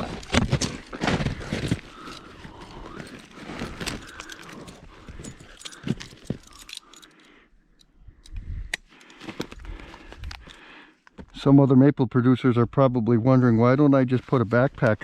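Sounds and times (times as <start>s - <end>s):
footsteps: 0.0s - 6.8s.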